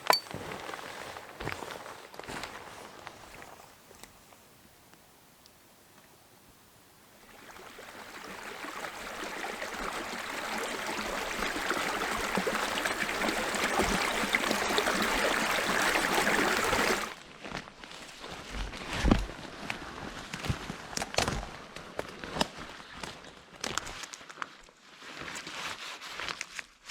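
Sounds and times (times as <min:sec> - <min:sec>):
rushing stream water: 0:07.1 - 0:17.2.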